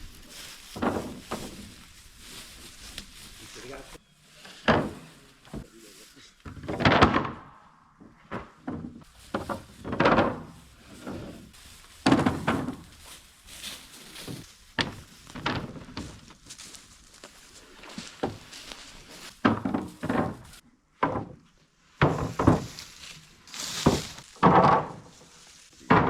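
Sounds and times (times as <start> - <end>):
heavy wooden thuds: 0.7 - 1.8, 6.4 - 13.2, 14.2 - 16.4, 19.3 - 21.4, 22.0 - 22.8, 23.8 - 25.2, 25.8 - 26.0.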